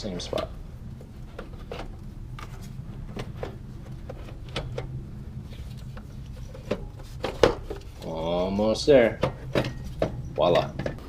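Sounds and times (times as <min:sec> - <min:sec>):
steady low hum: 0:00.0 - 0:11.0
metal knocks and scrapes: 0:01.2 - 0:08.1, 0:09.0 - 0:11.0.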